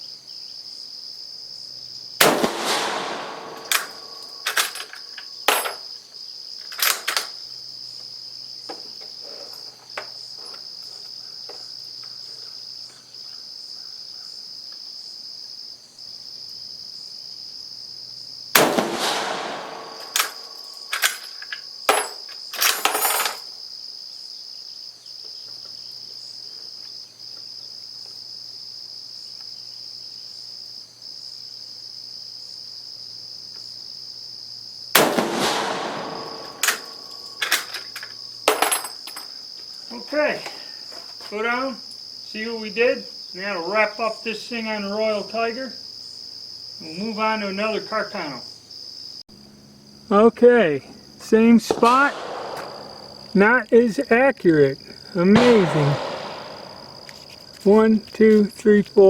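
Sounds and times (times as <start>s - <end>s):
crickets droning: 0.0s - 59.0s
rifle bolt metallic clicks: 2.2s - 4.9s, 18.6s - 21.3s, 35.0s - 38.0s
rifle shots: 2.2s - 4.9s, 18.6s - 21.2s, 35.0s - 37.9s, 51.6s - 53.3s, 55.3s - 57.5s.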